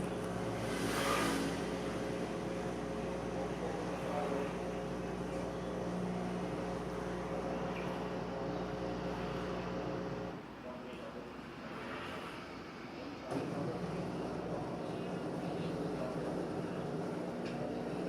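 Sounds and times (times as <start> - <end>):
washing machine motor hum: 0.0 - 10.4, 13.4 - 18.0.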